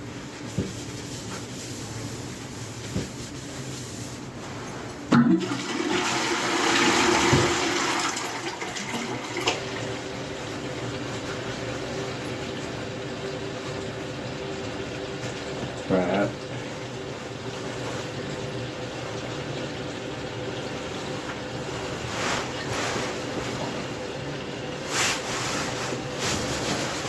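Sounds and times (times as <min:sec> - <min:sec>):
toilet flushing water rush: 0:05.1 - 0:27.0
toilet flush handle clunk: 0:06.7 - 0:07.8.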